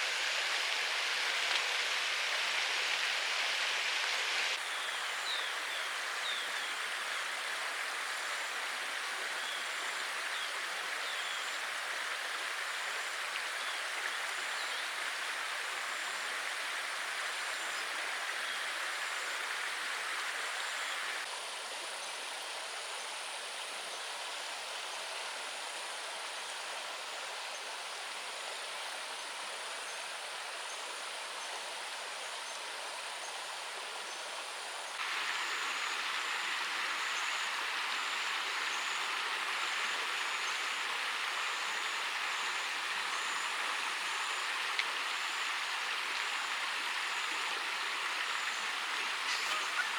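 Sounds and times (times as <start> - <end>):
steady rain falling: 0.0 - 21.3, 34.7 - 49.9.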